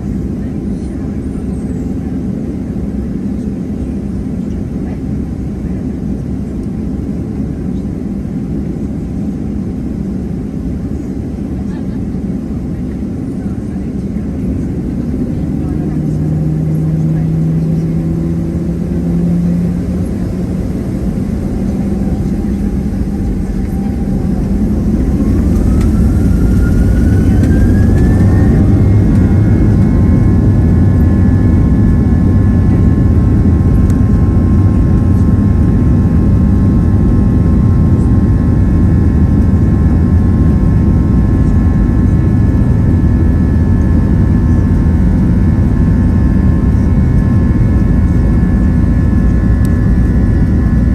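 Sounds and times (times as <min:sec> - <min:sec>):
deep rumble: 0:10.8 - 0:50.9
jet engines spooling up: 0:14.7 - 0:50.9.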